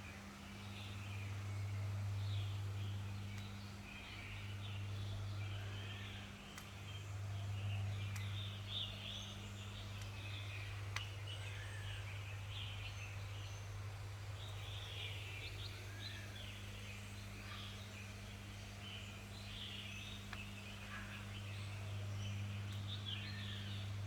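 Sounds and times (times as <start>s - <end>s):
small birds chirping: 0.0s - 24.0s
faint clicks: 6.5s - 6.8s, 8.1s - 8.4s, 9.9s - 10.3s, 10.9s - 11.2s, 20.3s - 20.6s.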